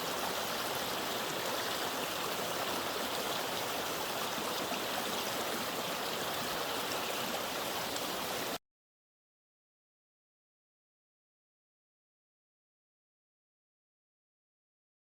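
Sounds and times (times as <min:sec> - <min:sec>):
creek water rushing: 0:00.0 - 0:08.6.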